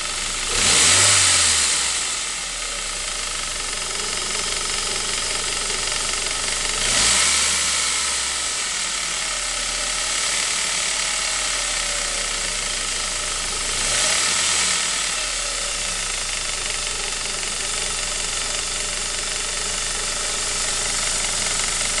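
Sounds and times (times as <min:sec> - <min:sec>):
car engine idling: 0:00.0 - 0:22.0
engine revs blipped: 0:00.5 - 0:02.2, 0:06.7 - 0:08.4.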